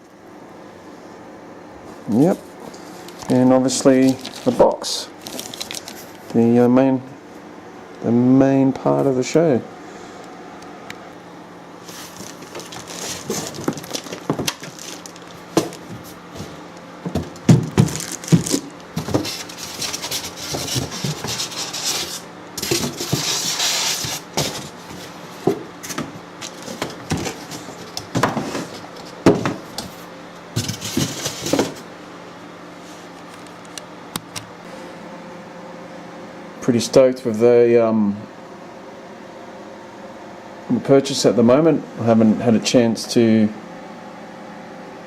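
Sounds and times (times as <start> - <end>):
packaging rustling: 3.0 - 6.3, 11.9 - 29.0
cardboard box knocks and bumps: 15.6 - 19.4.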